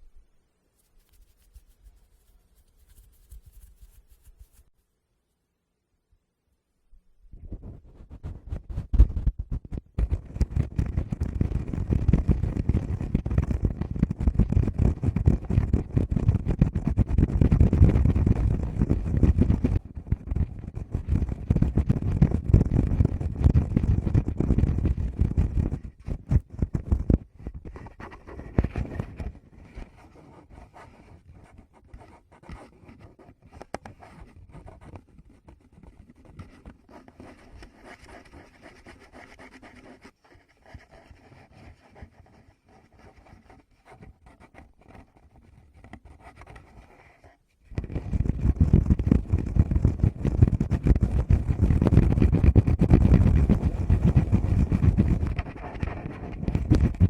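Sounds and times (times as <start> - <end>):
fingers rubbing on microphone: 0.7 - 4.8, 7.3 - 57.0.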